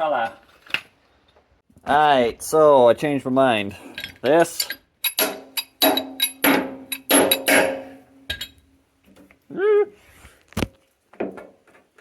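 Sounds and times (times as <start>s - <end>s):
hand tools clinking on metal: 3.9s - 8.6s
person humming: 9.5s - 10.0s.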